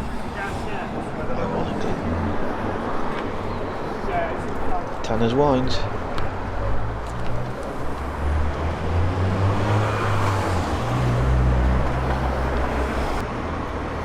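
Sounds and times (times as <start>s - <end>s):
road noise: 0.0s - 14.0s
vehicle engine rumble: 5.8s - 14.0s.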